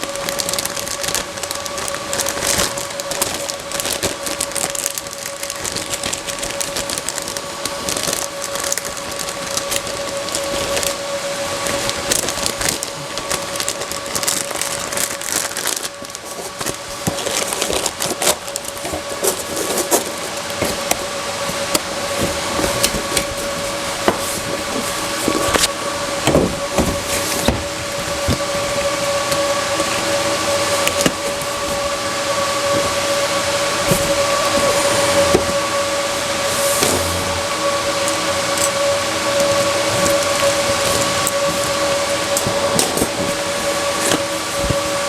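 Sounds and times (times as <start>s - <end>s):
packaging crinkling and clicking: 0.0s - 31.8s, 38.0s - 43.4s
steady two-note hum: 20.3s - 42.6s.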